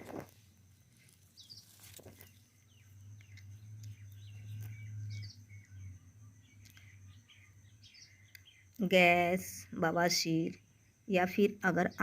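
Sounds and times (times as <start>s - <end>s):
low hum: 0.0s - 10.9s
small birds chirping: 0.0s - 12.0s.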